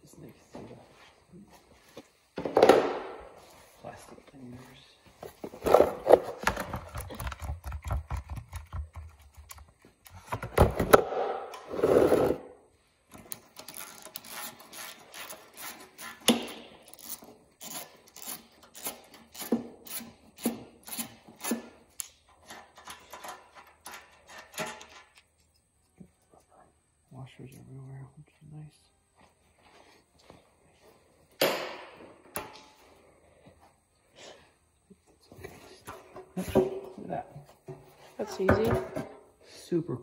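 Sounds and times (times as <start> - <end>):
ratchet wrench clicking: 13.3 - 22.2.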